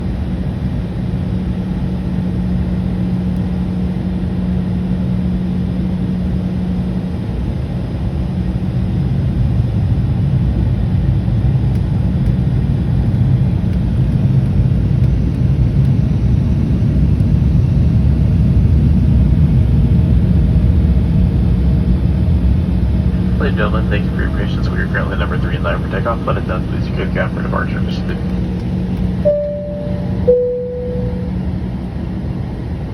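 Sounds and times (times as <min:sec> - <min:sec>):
low engine rumble: 0:22.5 - 0:32.9
steady cabin hum: 0:22.9 - 0:32.6.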